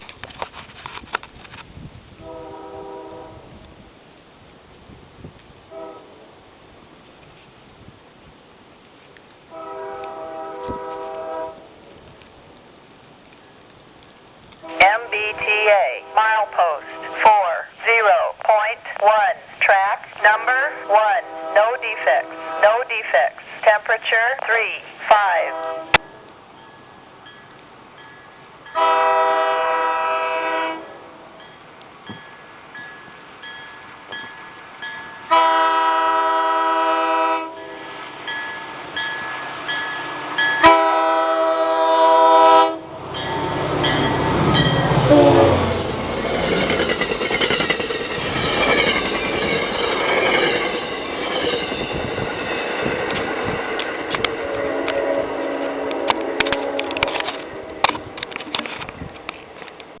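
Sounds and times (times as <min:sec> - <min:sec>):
train passing close by: 0:00.0 - 1:00.0
train horn blasts: 0:02.2 - 0:03.5, 0:05.7 - 0:06.3, 0:09.5 - 0:11.7, 0:14.6 - 0:14.9, 0:16.9 - 0:17.2, 0:20.7 - 0:21.6, 0:22.3 - 0:22.6, 0:25.5 - 0:26.3, 0:28.8 - 0:31.4, 0:35.3 - 0:38.0, 0:40.6 - 0:43.5, 0:45.0 - 0:45.8, 0:54.3 - 0:57.9
wheels clacking on rails: 0:43.0 - 1:00.0.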